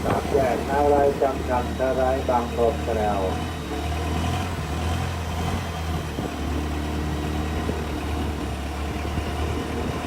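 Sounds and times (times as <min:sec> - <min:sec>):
boat engine droning: 0:00.0 - 0:10.0.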